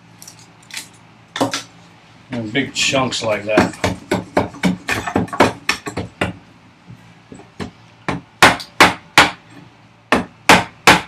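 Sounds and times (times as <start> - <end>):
chisel being struck: 7.6 - 9.4, 10.1 - 11.0.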